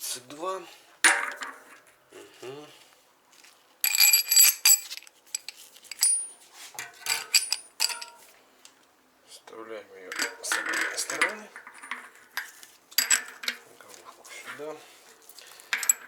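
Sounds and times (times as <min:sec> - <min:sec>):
metal sockets clinking: 0:03.8 - 0:08.2, 0:10.1 - 0:13.6, 0:15.7 - 0:16.0.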